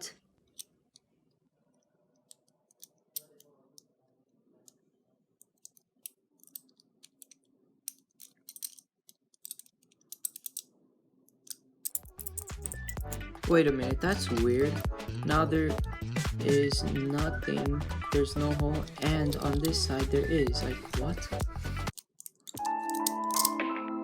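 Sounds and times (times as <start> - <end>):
metal puzzle parts clicking: 5.4 - 10.7, 11.4 - 13.3, 18.4 - 19.9, 21.6 - 23.6.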